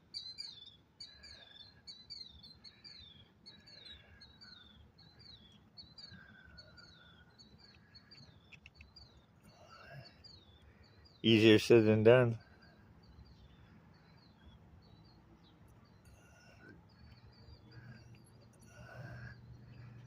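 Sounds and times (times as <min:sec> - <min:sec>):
faint bird chirping: 0:00.0 - 0:20.0
faint clicks: 0:05.5 - 0:09.6.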